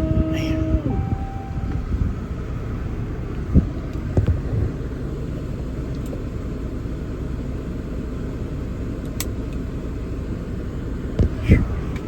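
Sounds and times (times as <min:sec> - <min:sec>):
diesel engine rumbling: 0:00.0 - 0:12.0
light click: 0:09.0 - 0:09.6.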